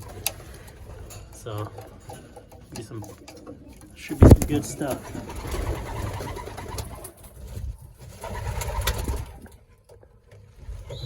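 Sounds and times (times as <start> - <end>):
pigeons cooing: 3.0 - 7.2.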